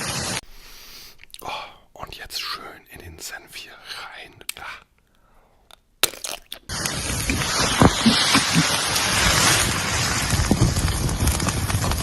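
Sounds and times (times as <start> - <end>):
wind buffeting microphone: 6.7 - 12.0.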